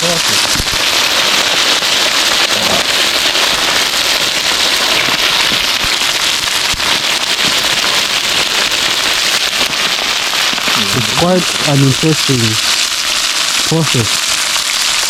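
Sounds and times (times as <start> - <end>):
meat sizzling in a pan: 0.0 - 15.0.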